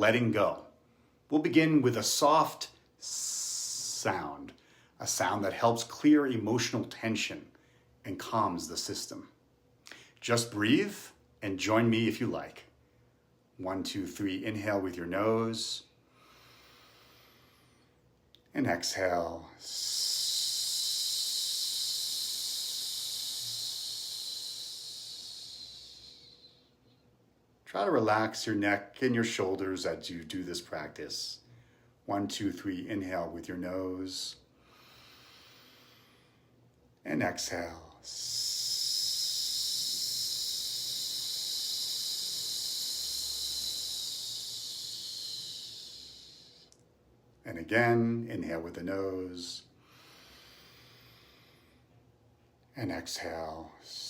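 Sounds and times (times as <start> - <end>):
man hissing on exhale: 19.5 - 26.8, 38.0 - 46.7, 49.7 - 51.8.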